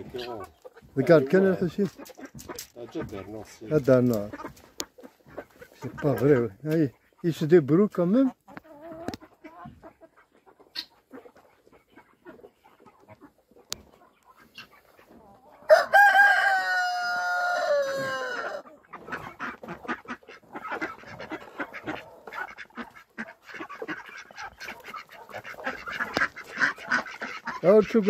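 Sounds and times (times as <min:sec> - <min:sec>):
rooster crowing: 0:15.7 - 0:18.6.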